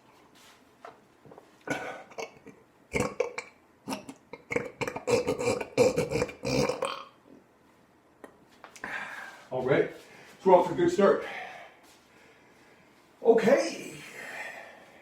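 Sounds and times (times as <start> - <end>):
man belching: 1.7 - 7.2.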